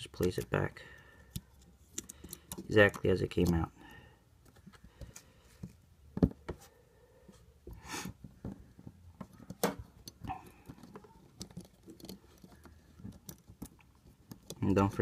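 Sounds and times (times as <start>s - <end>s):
small phone parts clicking: 1.2s - 3.7s, 9.2s - 14.6s.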